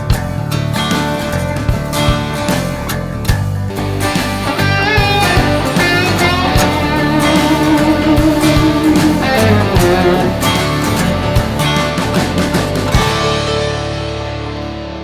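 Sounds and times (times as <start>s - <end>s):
steady drum beat: 0.0s - 13.6s
guitar-led rock music: 0.0s - 15.0s.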